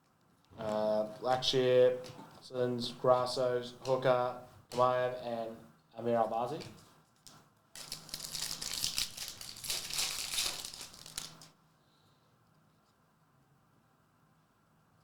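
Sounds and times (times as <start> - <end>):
foil wrapper crinkling: 7.2 - 11.6.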